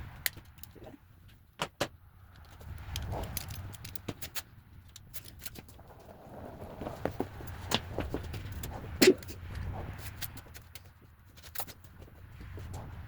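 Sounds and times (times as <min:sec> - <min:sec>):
clicks of tools and metal parts: 0:00.2 - 0:05.8, 0:09.0 - 0:11.9.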